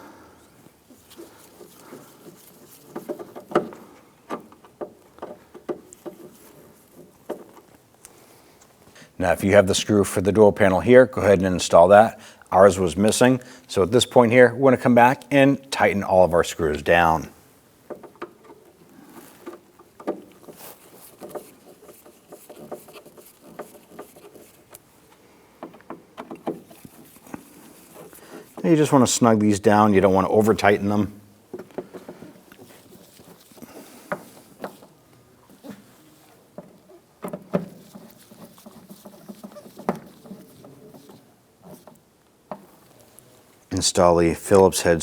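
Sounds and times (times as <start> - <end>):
small rustling and tapping: 0.5 - 9.0, 16.6 - 43.7.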